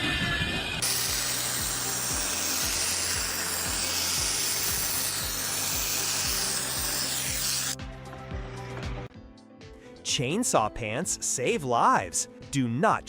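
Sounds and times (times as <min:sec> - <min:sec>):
power tool cutting hiss: 0:00.8 - 0:07.8
background music with beat: 0:07.8 - 0:09.9.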